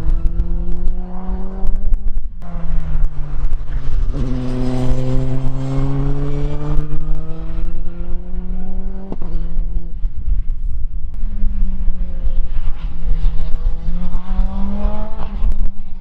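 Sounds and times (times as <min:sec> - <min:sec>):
race car engine revving: 0:02.4 - 0:09.8, 0:11.2 - 0:16.0.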